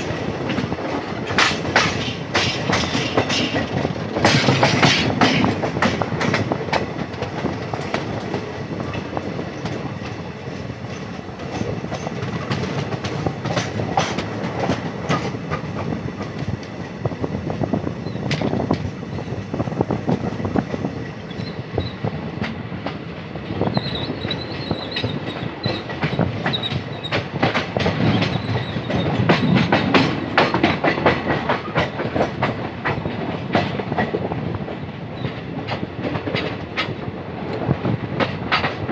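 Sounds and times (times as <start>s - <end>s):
wheels clacking over rail joints: 0.0s - 17.0s, 20.0s - 38.9s
train rumbling on track: 0.0s - 38.9s
high wheel squeal: 23.6s - 25.8s.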